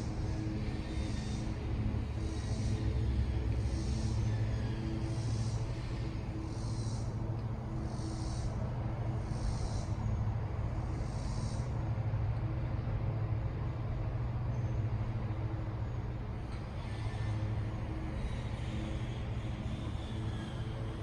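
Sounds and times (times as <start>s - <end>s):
high-pitched rhythmic pulsing: 0.0s - 10.1s
low mechanical hum: 0.0s - 21.0s.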